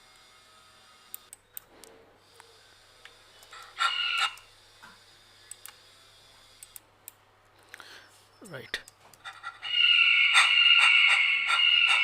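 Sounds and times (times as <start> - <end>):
eagle scream: 9.6 - 12.0.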